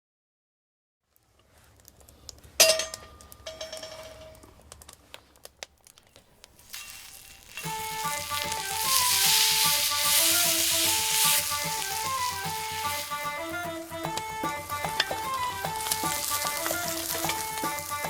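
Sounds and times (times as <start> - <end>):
food sizzling in frying pan: 6.5 - 13.9
background music simple melody: 7.1 - 18.0.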